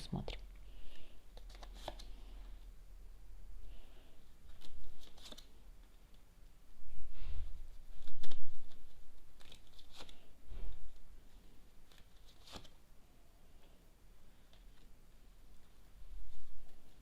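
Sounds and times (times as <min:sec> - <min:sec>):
cards clicking and rustling: 0:01.3 - 0:02.2, 0:04.5 - 0:05.6, 0:07.9 - 0:10.3, 0:11.8 - 0:12.8.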